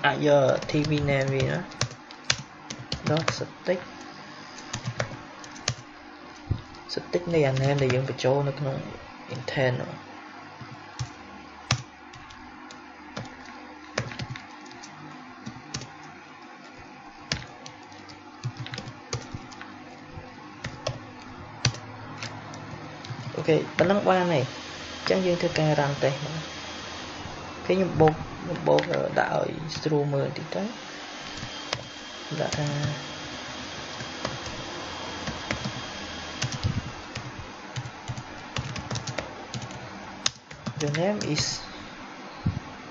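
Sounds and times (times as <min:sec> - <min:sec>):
typing on keyboard: 0:00.4 - 0:03.4, 0:04.0 - 0:05.8, 0:11.0 - 0:16.1, 0:17.3 - 0:19.6, 0:20.6 - 0:23.4, 0:36.4 - 0:41.0.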